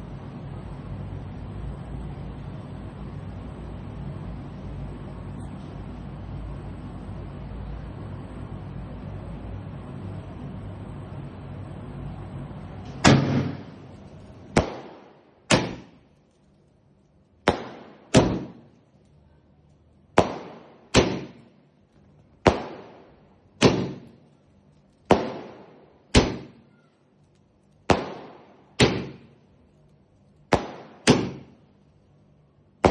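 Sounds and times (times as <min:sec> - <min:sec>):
firework bangs: 0:12.6 - 0:16.4, 0:17.4 - 0:18.9, 0:20.1 - 0:21.7, 0:22.4 - 0:24.4, 0:25.0 - 0:27.0, 0:27.8 - 0:29.6, 0:30.4 - 0:31.8.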